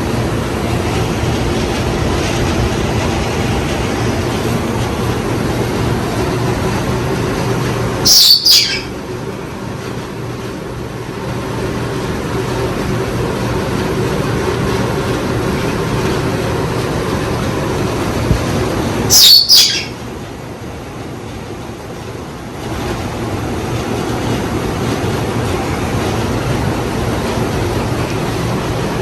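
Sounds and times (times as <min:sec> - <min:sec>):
ceiling fan motor hum: 0:00.0 - 0:29.0
high double chirp: 0:08.0 - 0:09.0, 0:19.1 - 0:20.0.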